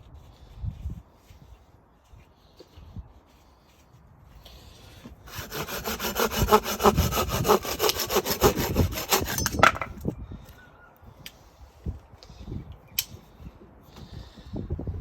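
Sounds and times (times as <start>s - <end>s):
pruning saw cutting wood: 5.3s - 9.6s.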